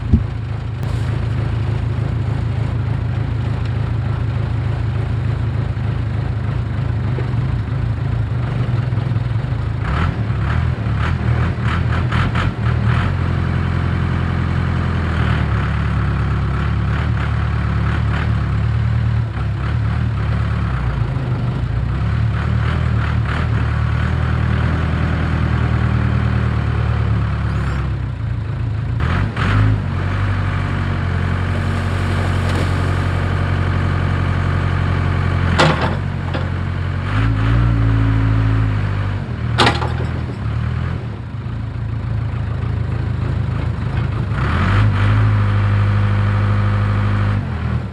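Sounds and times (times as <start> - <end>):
heavy diesel engine running: 0.0 - 5.5, 31.2 - 33.5.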